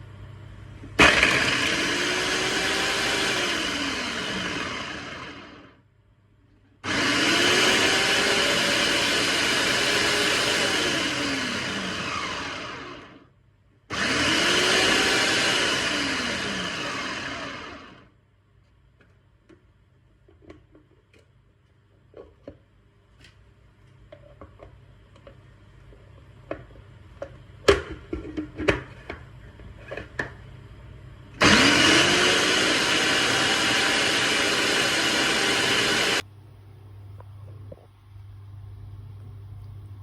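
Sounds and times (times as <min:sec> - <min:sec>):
blender running: 0:01.0 - 0:05.8, 0:06.8 - 0:13.3, 0:13.9 - 0:18.1, 0:31.4 - 0:36.2.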